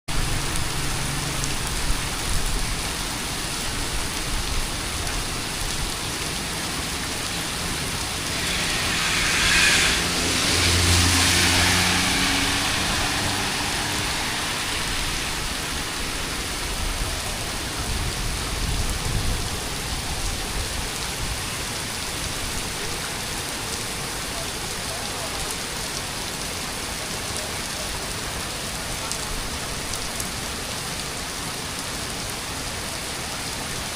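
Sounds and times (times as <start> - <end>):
heavy rain hissing: 0.1 - 33.9.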